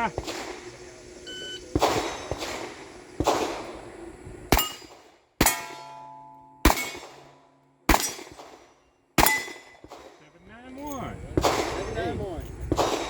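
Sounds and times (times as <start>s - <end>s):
revolver shots: 1.7s - 3.8s
steel targets ringing: 1.8s - 2.8s, 4.5s - 9.9s.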